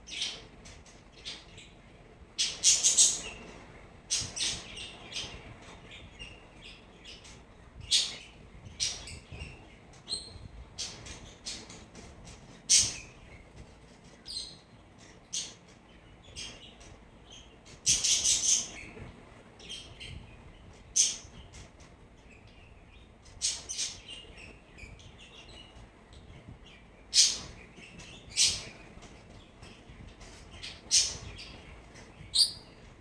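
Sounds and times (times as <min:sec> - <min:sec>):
birds chirping: 0:22.2 - 0:33.0.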